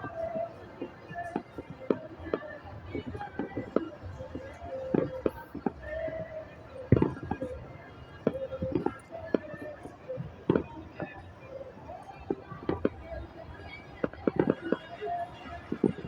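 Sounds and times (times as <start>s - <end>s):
distant fireworks bangs: 8.2s - 11.2s.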